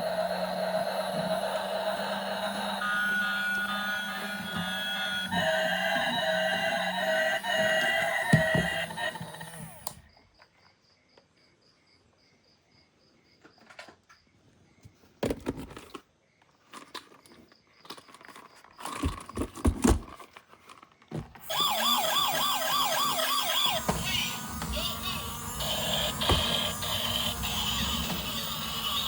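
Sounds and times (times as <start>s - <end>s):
toy electronic siren warbling: 0.0s - 10.0s, 21.4s - 29.0s
plastic toys knocking and clicking: 16.6s - 29.0s.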